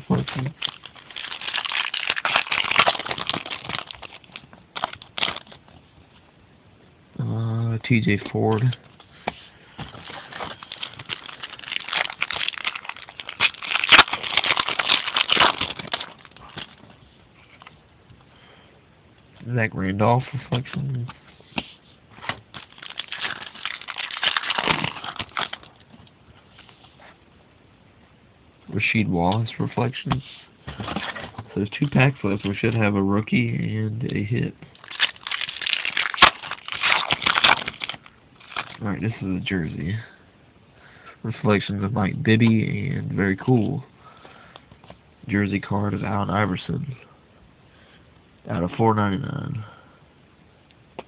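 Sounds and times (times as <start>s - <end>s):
card packaging crinkling: 0.0s - 5.7s, 9.8s - 16.9s, 22.2s - 25.9s, 34.2s - 38.8s.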